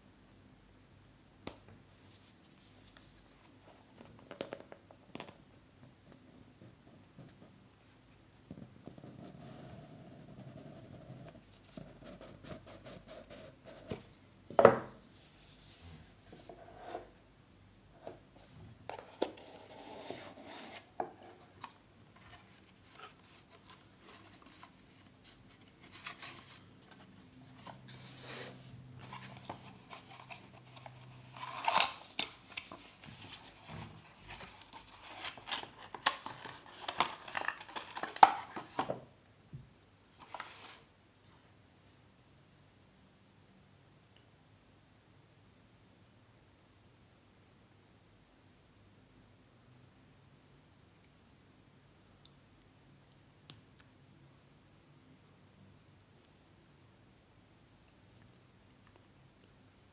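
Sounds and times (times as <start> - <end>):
packaging rustling and clicking: 34.2 - 38.9.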